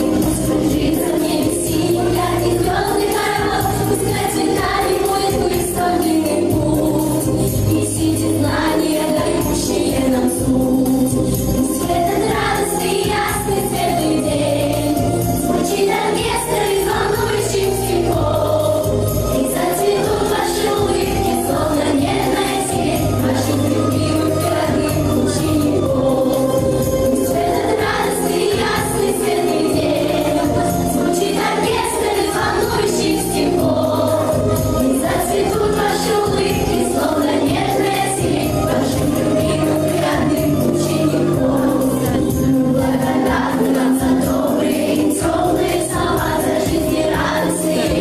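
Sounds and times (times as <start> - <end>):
backing music with bass line: 0.0 - 48.0
children singing in a choir: 0.0 - 48.0
jingling percussion beat: 0.0 - 48.0.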